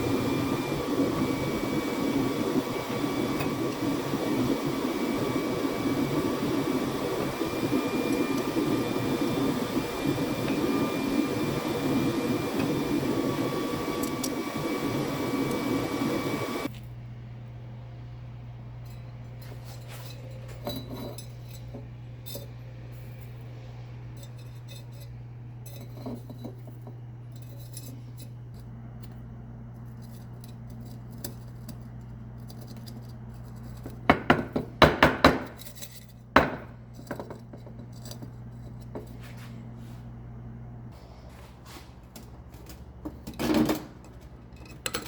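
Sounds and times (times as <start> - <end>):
steady low hum: 0.0 - 45.0.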